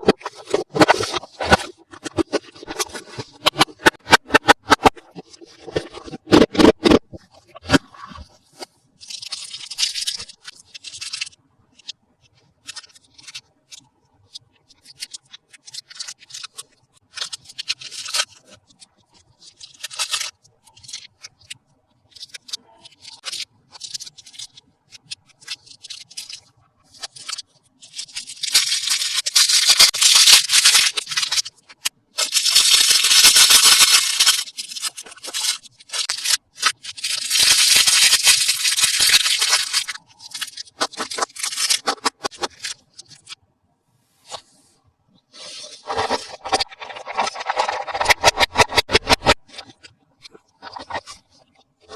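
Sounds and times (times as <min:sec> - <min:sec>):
plastic packaging crinkling: 0:00.0 - 0:07.0, 0:25.5 - 0:43.4, 0:45.4 - 0:49.6.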